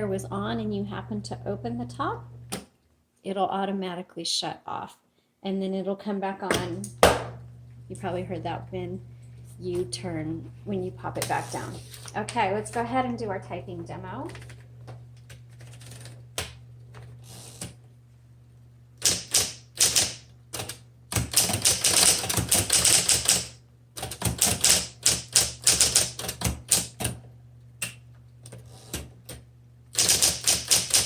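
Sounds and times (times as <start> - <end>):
typewriter motor hum: 14.2 - 17.8, 19.0 - 27.2, 28.4 - 31.0
typewriter keystrokes: 19.0 - 27.1, 30.0 - 31.0.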